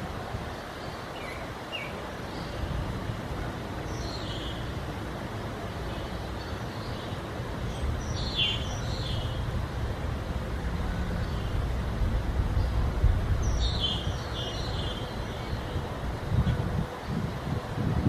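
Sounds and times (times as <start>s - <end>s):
songbird singing: 0.5s - 2.9s, 3.8s - 4.8s, 5.8s - 9.6s, 10.8s - 17.2s
wind buffeting microphone: 7.4s - 18.0s.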